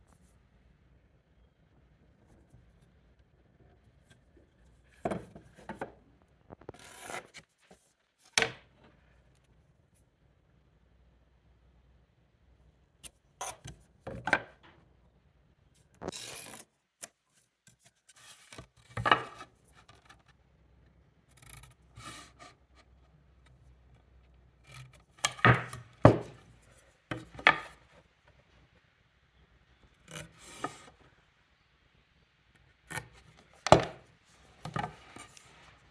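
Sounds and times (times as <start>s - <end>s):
marking tool scraping wood: 6.8s - 7.4s, 21.4s - 22.6s, 30.1s - 30.9s
tools knocking on wood: 25.2s - 26.4s, 27.1s - 27.8s, 33.6s - 34.0s.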